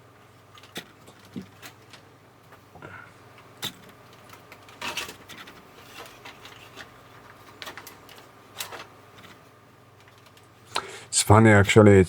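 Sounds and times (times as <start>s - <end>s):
circuit board rattling scrape: 4.6s - 9.4s.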